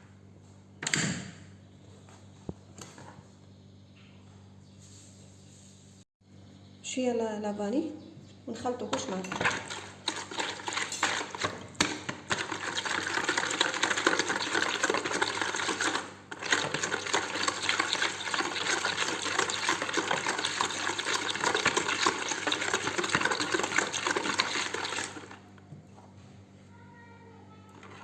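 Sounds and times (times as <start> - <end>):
batter beaten by hand in bowl: 8.9 - 25.4.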